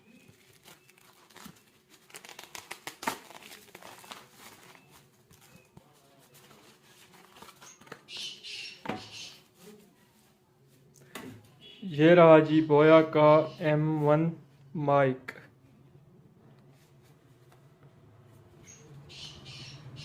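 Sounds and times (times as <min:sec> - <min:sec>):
crinkling rustle: 0:00.0 - 0:08.1
packaging clicks and rustles: 0:00.0 - 0:08.1.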